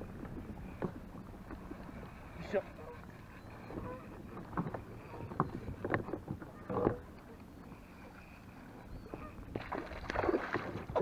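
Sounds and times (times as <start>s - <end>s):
wind rumble on microphone: 0.0s - 2.5s, 9.0s - 11.0s
knocks and splashy clatters: 9.5s - 11.0s.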